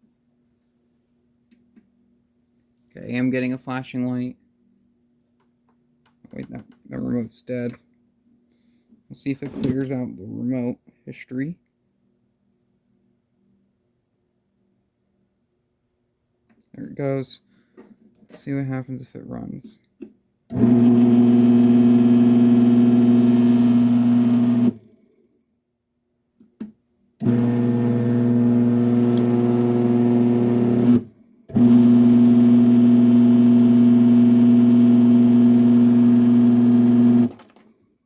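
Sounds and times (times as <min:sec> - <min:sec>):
garage door opener motor hum: 0:20.5 - 0:25.2, 0:27.2 - 0:37.6.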